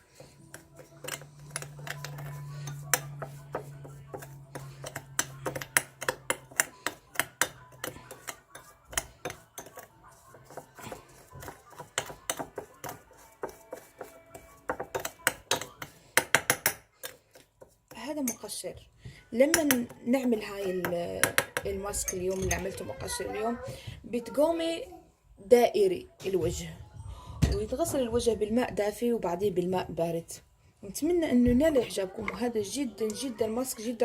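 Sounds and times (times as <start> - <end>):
spoon stirring in a bowl: 0.0 - 23.5, 31.0 - 34.0.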